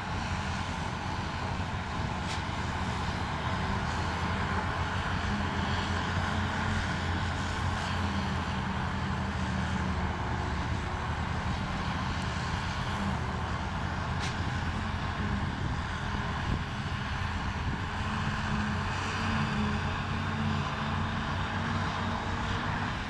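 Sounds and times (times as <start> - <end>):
diesel machinery engine drone: 0.0 - 23.0.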